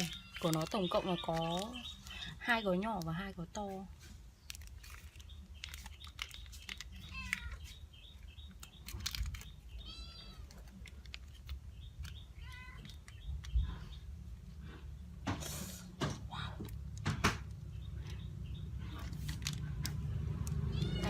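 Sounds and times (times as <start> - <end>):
packets rustling: 0.0 - 14.5, 18.8 - 20.6
cat meowing: 9.8 - 10.6, 20.7 - 21.0.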